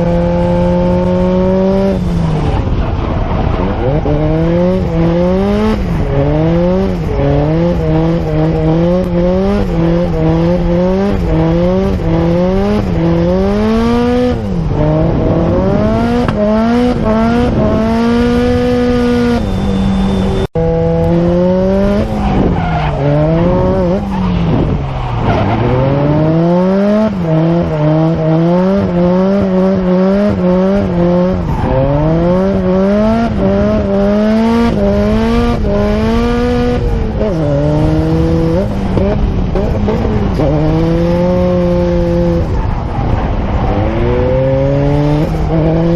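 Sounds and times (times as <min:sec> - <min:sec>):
car engine revving hard: 0:00.0 - 0:45.9
tyre squeal: 0:18.8 - 0:20.5.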